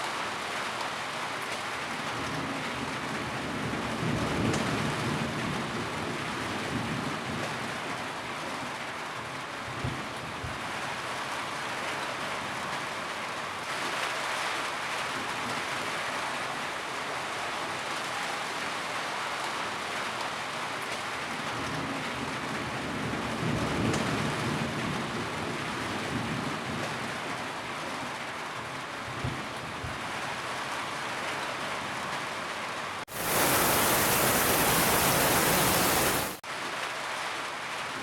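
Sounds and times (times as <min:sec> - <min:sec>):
rain on a roof: 0:00.0 - 0:38.0
thunder rumbling: 0:33.1 - 0:36.4.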